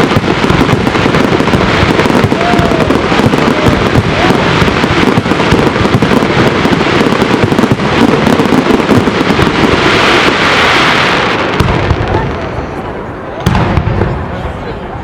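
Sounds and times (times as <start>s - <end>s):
firework rising whistle: 0.0s - 6.0s
fireworks bangs and crackles: 0.0s - 15.0s.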